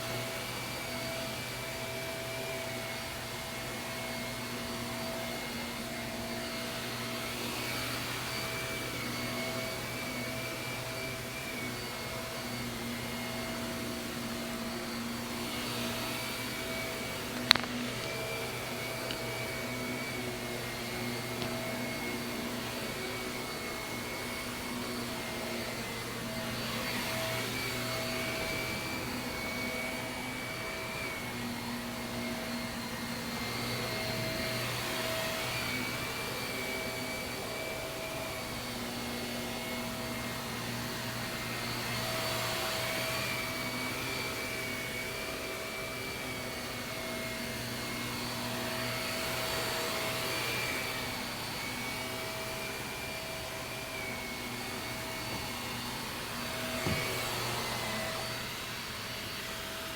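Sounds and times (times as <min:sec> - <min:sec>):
vacuum cleaner running on carpet: 0:00.0 - 0:59.9.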